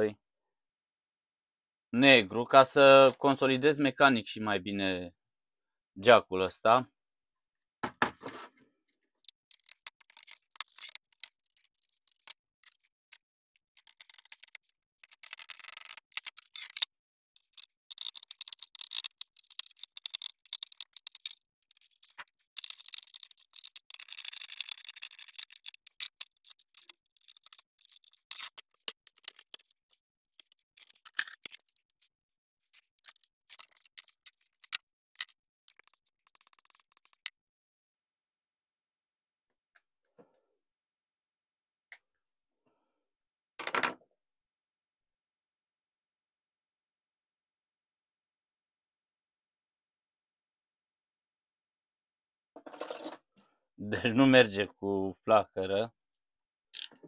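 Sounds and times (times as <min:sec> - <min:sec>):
scraping of small parts: 0:09.2 - 0:37.3, 0:52.6 - 0:53.2, 0:56.8 - 0:57.0
small tools clicking and tapping: 0:09.2 - 0:37.4, 0:56.8 - 0:57.0.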